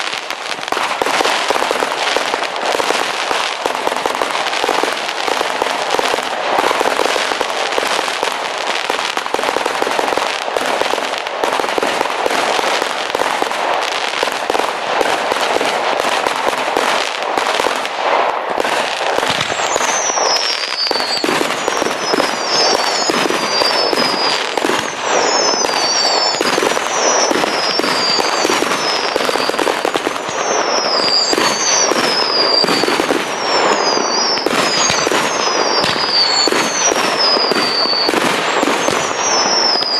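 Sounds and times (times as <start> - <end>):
fireworks crackling: 0.0 - 39.9
high falling whistles: 19.1 - 39.9.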